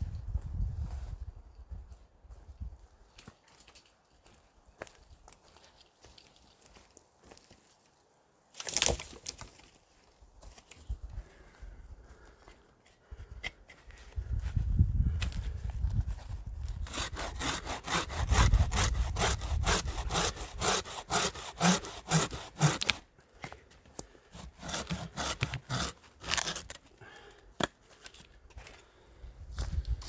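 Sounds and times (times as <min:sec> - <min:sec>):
hand saw cutting wood: 0:16.7 - 0:23.1, 0:24.3 - 0:26.8.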